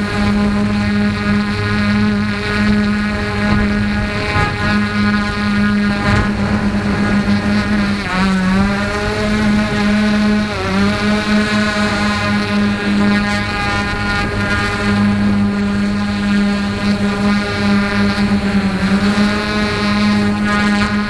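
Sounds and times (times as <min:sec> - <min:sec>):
motorboat engine running: 0:00.0 - 0:21.0.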